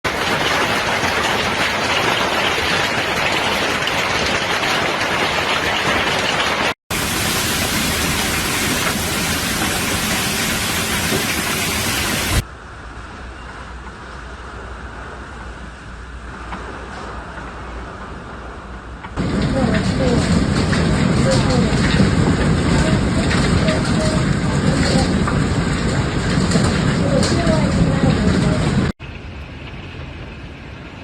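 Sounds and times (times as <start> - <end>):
hail and heavy rain: 0.1 - 12.4, 19.2 - 29.0.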